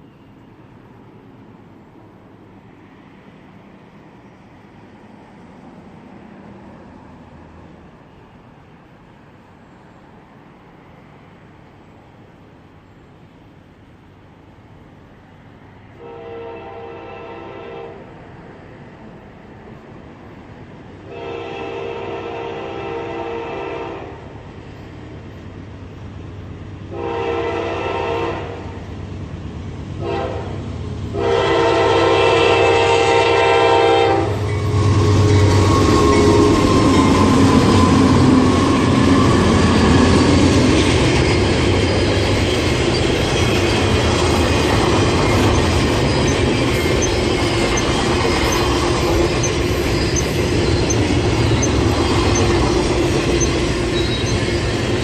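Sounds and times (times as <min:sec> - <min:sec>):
train engine drone: 0:00.0 - 0:55.0
locomotive air horn blasts: 0:16.0 - 0:18.1, 0:21.1 - 0:24.2, 0:26.9 - 0:28.8, 0:30.0 - 0:39.6
wheels clacking on rails: 0:27.9 - 0:55.0.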